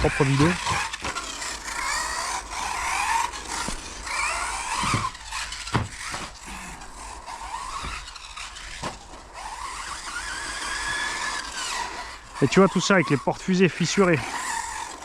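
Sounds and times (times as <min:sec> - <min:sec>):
toy car knocking: 0:00.0 - 0:06.8
electric motor whining: 0:00.0 - 0:15.0.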